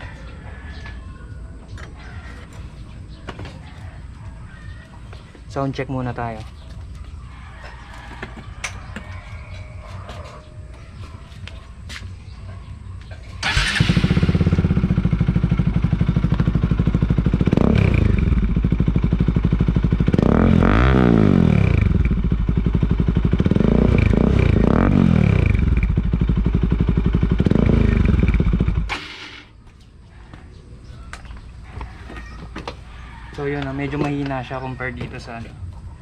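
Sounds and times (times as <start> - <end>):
motorcycle engine idling and revving: 0.0 - 36.0.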